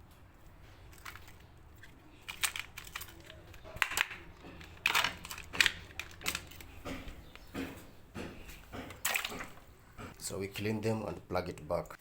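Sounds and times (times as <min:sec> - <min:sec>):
hard plastic clicks and scrapes: 0:00.8 - 0:10.2.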